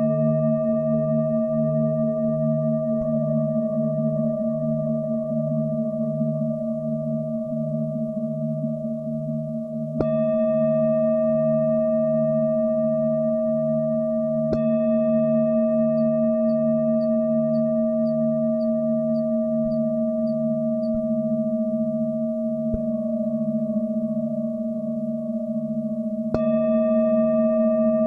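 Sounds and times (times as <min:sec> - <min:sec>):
singing bowl struck: 0:10.0 - 0:11.8, 0:14.4 - 0:21.4, 0:26.3 - 0:28.0
singing bowls ringing: 0:10.0 - 0:21.7, 0:26.3 - 0:28.0.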